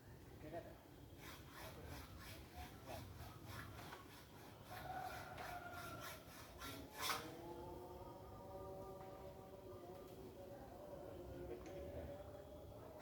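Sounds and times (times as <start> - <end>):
saw cutting through pipe: 1.2 - 7.4.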